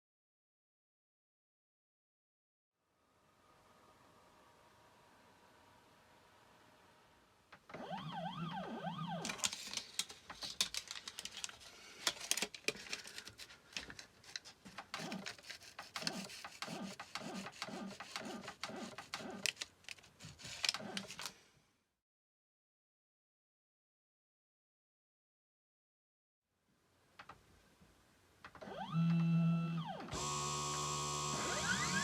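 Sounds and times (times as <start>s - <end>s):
stepper motors whining: 28.7s - 32.0s.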